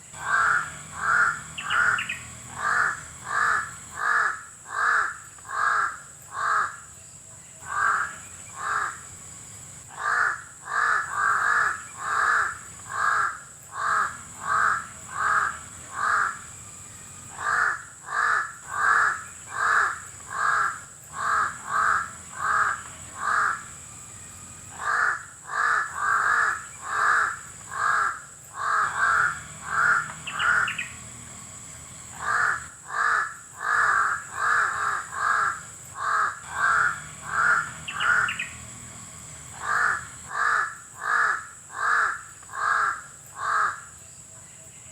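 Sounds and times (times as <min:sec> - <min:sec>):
crow cawing: 0:00.2 - 0:06.9, 0:07.6 - 0:44.0.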